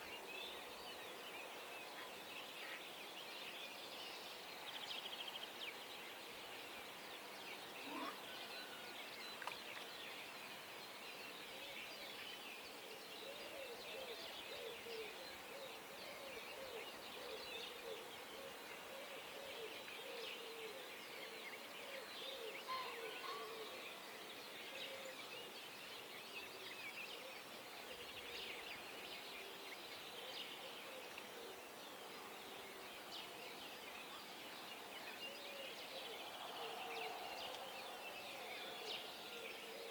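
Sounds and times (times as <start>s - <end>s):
rapidly repeated bird calls: 35.3s - 39.9s.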